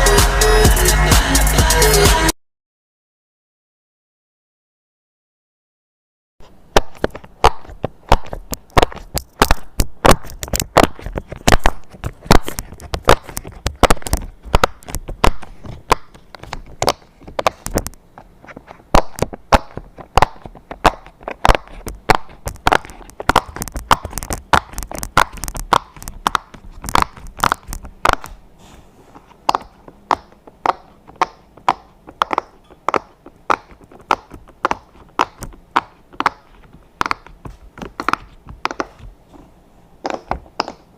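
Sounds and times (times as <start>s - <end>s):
pop-it toy popping: 6.7s - 18.0s, 18.9s - 28.4s, 29.4s - 39.1s, 40.0s - 40.9s.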